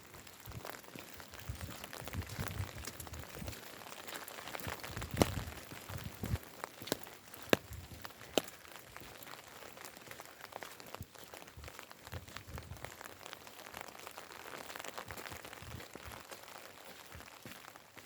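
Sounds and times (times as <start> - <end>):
rain falling: 0.0 - 18.0
soft footfalls: 0.4 - 13.0.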